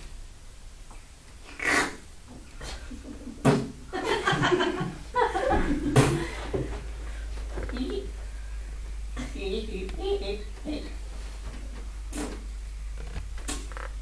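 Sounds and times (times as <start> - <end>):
people laughing: 4.0 - 6.4.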